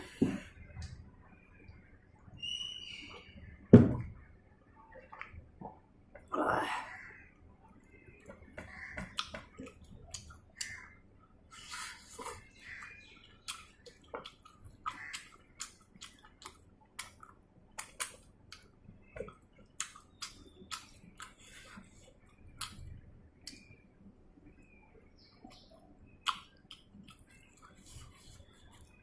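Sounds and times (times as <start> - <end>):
person chewing with wet mouth clicks: 13.4 - 18.7, 19.3 - 21.4, 26.2 - 27.8.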